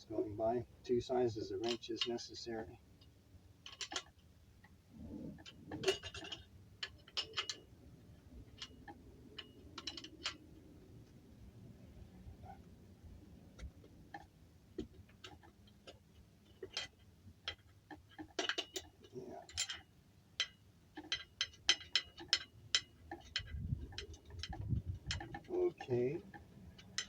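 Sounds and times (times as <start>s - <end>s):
wrenches and nuts clicking: 3.0s - 4.3s, 5.4s - 7.8s, 8.4s - 10.4s, 14.1s - 27.0s.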